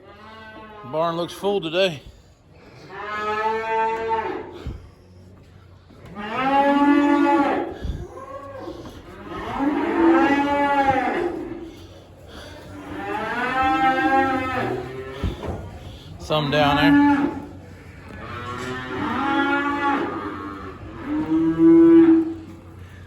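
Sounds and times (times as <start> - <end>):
calves mooing: 0.0 - 1.2, 2.9 - 4.7, 6.0 - 11.9, 12.7 - 15.6, 16.4 - 22.6.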